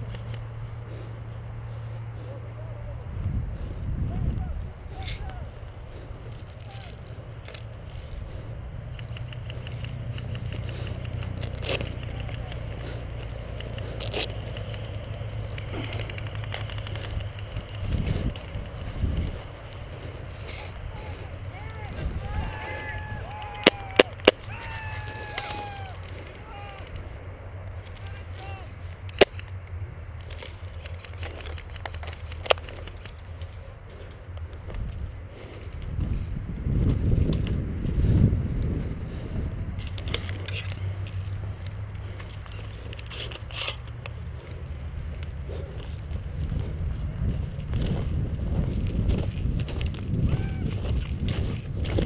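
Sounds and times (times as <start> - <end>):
wind rumble on microphone: 0.0 - 52.0
sharp clicks: 6.2 - 22.1, 27.8 - 35.0
faint clicks: 8.9 - 19.8
faint ticks: 8.9 - 19.8.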